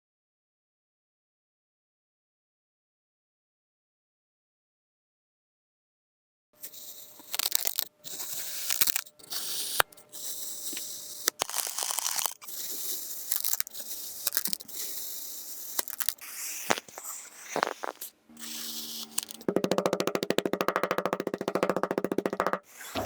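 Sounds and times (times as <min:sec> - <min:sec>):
kinetic sand crunching when cut: 0:06.7 - 0:19.5.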